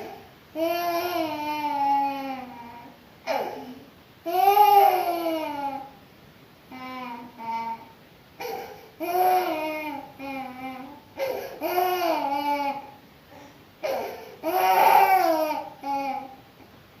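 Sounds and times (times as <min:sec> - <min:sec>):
baby crying: 0:06.7 - 0:13.0, 0:13.8 - 0:16.4.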